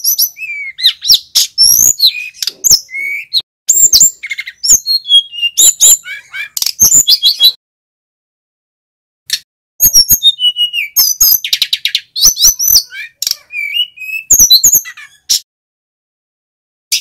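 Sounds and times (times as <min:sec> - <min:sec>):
flycatcher singing: 0:00.0 - 0:07.6, 0:09.8 - 0:15.3.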